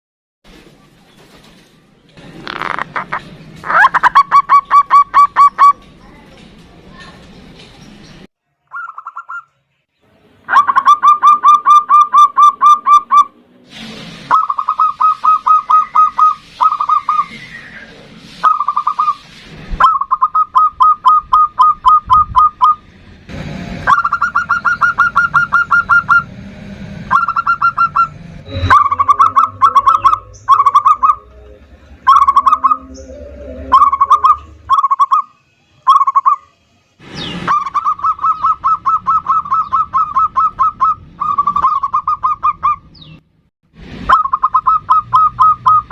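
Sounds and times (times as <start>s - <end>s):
dove rattling coos: 2.4s - 5.8s, 23.8s - 26.3s, 27.1s - 35.2s.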